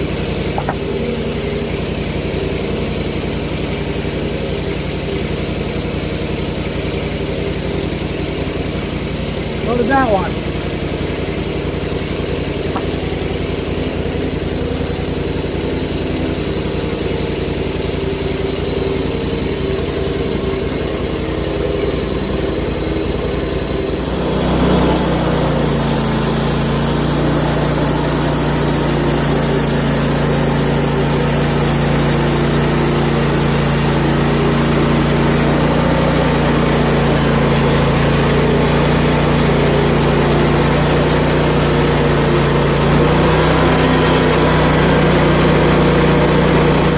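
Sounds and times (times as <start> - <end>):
gasoline engine running: 0.0 - 46.9
bandsaw blade sawing hiss: 9.6 - 20.2, 21.4 - 46.9.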